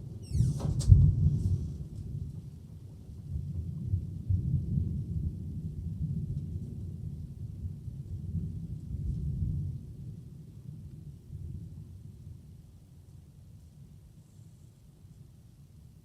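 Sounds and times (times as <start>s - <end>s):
thunder rumbling: 0.0s - 10.4s.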